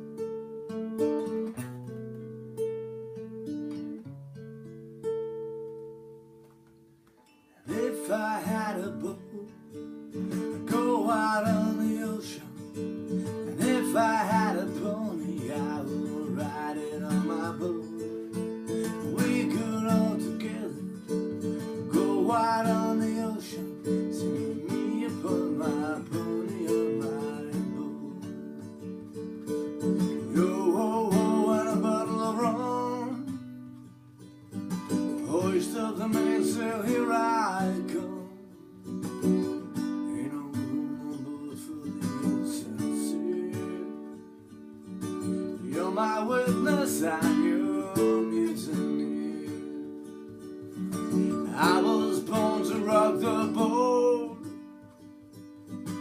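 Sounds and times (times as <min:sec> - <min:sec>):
acoustic guitar strumming: 0:00.0 - 0:56.0
person singing: 0:07.6 - 0:09.6, 0:10.3 - 0:28.8, 0:30.2 - 0:33.5, 0:35.2 - 0:38.5, 0:40.0 - 0:44.2, 0:45.6 - 0:50.0, 0:51.4 - 0:54.6.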